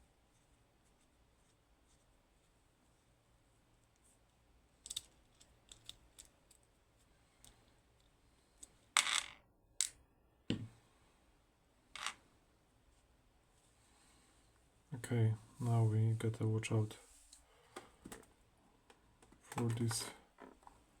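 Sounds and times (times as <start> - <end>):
lock parts clicking and scraping: 4.8 - 6.7.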